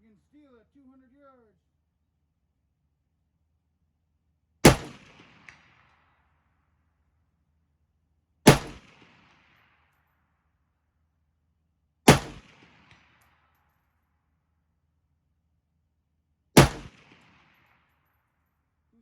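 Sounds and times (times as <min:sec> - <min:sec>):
rifle shots: 0:04.6 - 0:06.0, 0:08.5 - 0:09.8, 0:12.1 - 0:13.3, 0:16.6 - 0:17.8.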